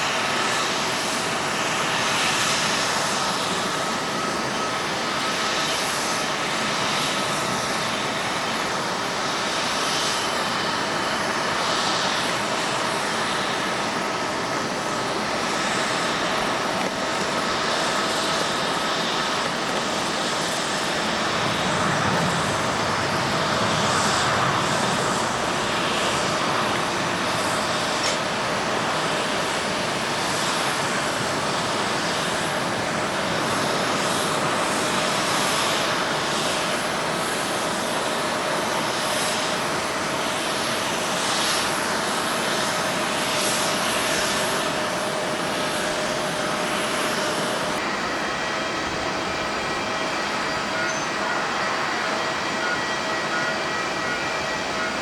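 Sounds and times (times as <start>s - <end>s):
jet engines running: 0.0s - 55.0s.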